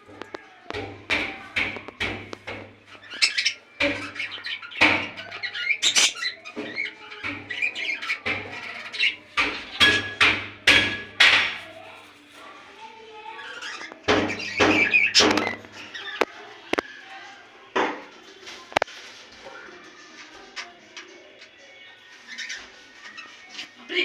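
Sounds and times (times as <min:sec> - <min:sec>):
budgerigars chattering and squawking: 0:02.3 - 0:10.3, 0:13.4 - 0:16.3.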